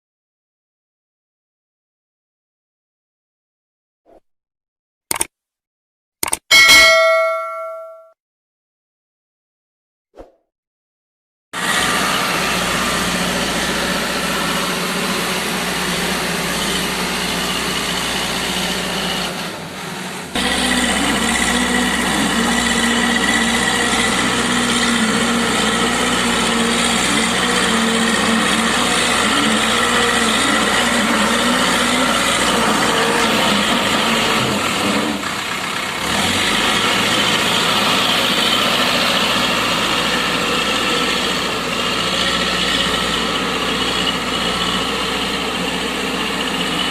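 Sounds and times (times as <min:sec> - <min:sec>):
diesel engine running: 0:11.6 - 0:46.9.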